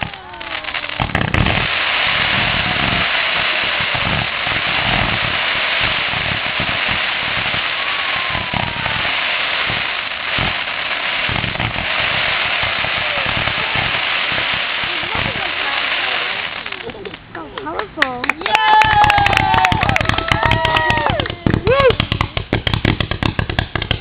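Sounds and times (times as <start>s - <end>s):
fireworks crackling and booming: 0.0s - 24.0s
faint firework whistle: 1.9s - 14.4s.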